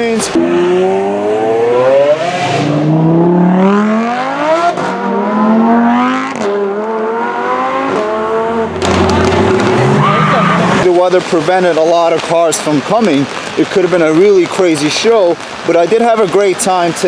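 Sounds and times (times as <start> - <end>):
car engine accelerating: 0.3 - 10.9.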